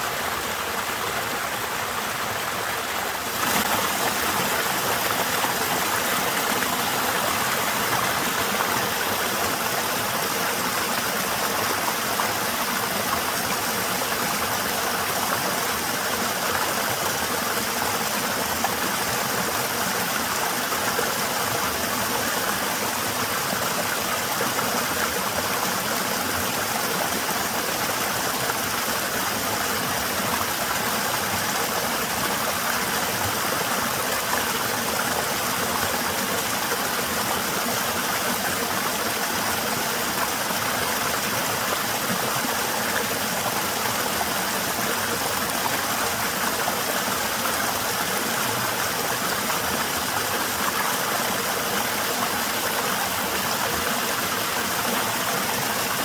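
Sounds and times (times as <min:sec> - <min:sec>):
small waterfall rushing: 0:00.0 - 0:56.0.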